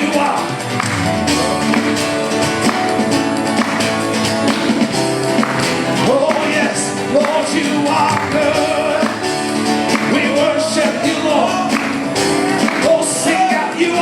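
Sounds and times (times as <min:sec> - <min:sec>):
acoustic guitar: 0:00.0 - 0:14.0
percussion playing: 0:00.0 - 0:14.0
people singing: 0:05.8 - 0:14.0.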